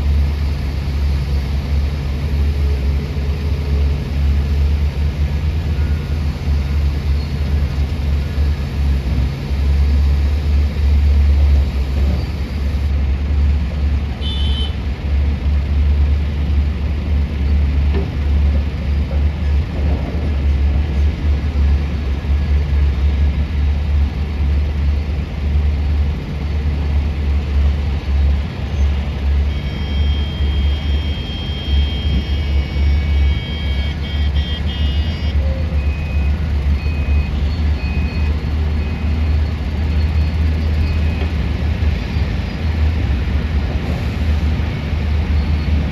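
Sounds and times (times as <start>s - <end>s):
heavy diesel engines rumbling: 0.0s - 45.9s
reversing alarm beeping: 29.5s - 41.6s.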